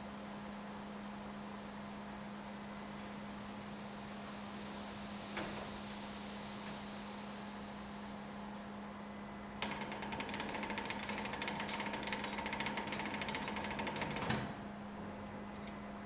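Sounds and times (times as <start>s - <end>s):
fast mechanical rattle: 9.6s - 14.4s.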